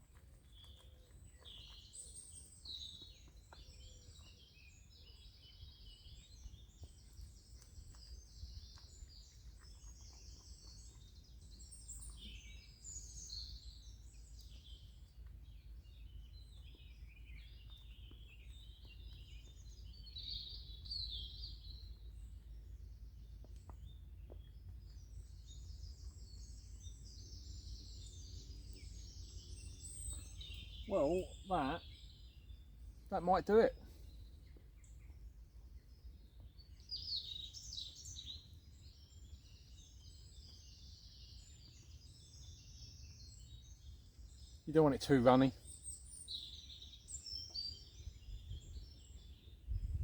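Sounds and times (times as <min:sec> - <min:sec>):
small birds chirping and trilling: 0:00.0 - 0:50.0.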